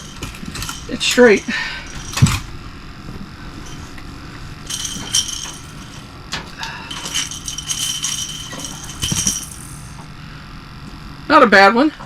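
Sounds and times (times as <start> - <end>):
fishing tackle jingling: 0.0 - 2.5, 3.6 - 10.0
faint low hum: 0.0 - 12.0.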